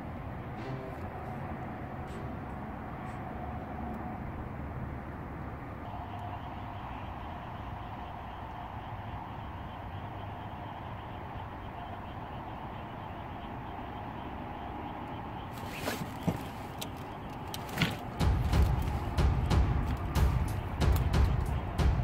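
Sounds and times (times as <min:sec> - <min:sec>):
low outdoor background noise: 0:00.0 - 0:22.0
sharp clicks and knocks: 0:15.7 - 0:22.0
music with heavy drum beats: 0:18.0 - 0:22.0.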